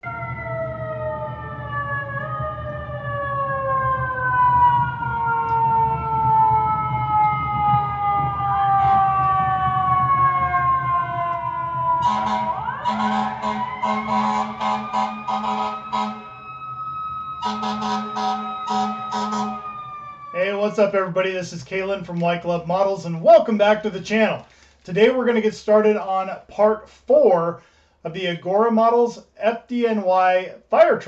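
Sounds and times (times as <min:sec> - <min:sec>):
rapid pulsing siren tone: 0:00.0 - 0:21.0
fire truck siren wailing: 0:00.0 - 0:24.4.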